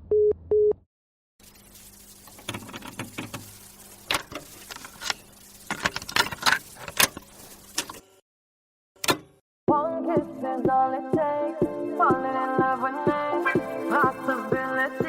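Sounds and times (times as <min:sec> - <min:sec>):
rustling and handling noise: 0:01.4 - 0:08.1, 0:13.4 - 0:15.0.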